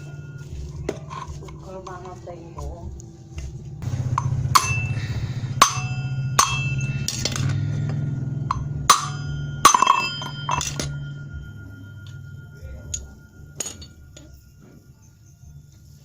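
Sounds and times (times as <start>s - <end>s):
metal clinks and knocks: 0.0s - 3.0s, 3.8s - 16.0s
grass-cutter engine humming: 3.8s - 12.4s.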